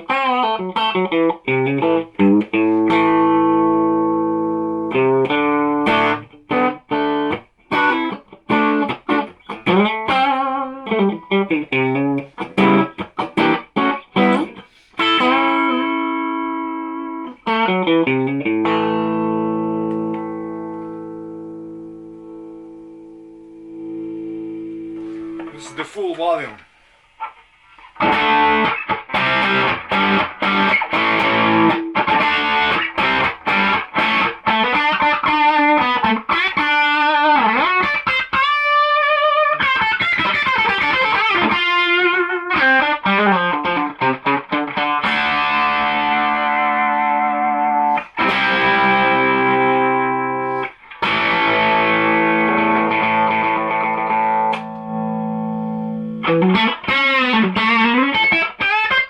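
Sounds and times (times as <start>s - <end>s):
electric guitar through valve amp: 0.0s - 59.0s.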